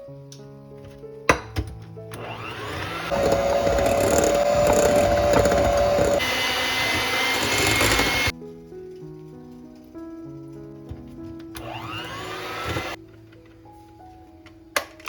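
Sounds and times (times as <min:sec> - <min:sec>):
kitchen appliance motor whining: 0:02.1 - 0:08.3, 0:11.6 - 0:13.0.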